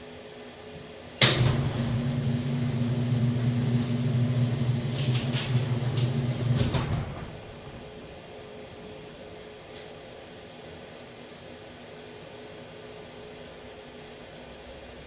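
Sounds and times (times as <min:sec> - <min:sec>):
electric motor humming: 0:01.3 - 0:06.9.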